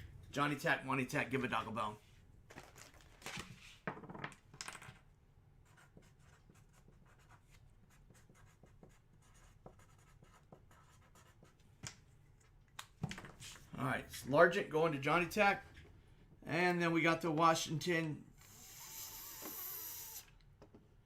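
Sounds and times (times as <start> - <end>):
pen scratching on paper: 5.6 - 11.6.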